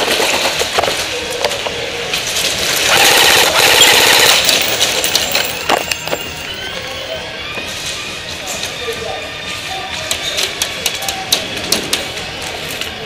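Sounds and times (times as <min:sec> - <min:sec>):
automatic gunfire: 0:02.8 - 0:04.8.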